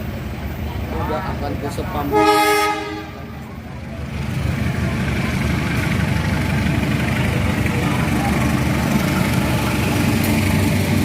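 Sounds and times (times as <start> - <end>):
low engine rumble: 0.0 - 11.0
train horn blast: 2.1 - 3.4.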